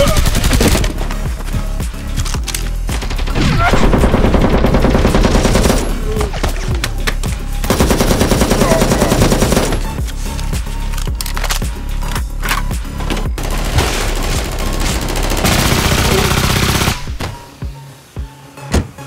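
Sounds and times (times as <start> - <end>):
automatic gunfire bursts: 13.4 - 17.2
scattered gunshots: 13.4 - 17.2.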